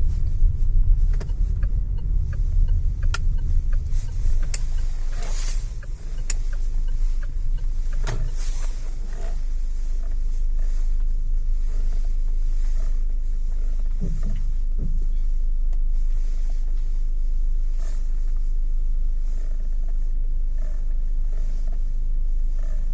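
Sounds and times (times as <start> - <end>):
steering wheel creaking: 0.0 - 11.1
car low rumble: 0.0 - 22.9.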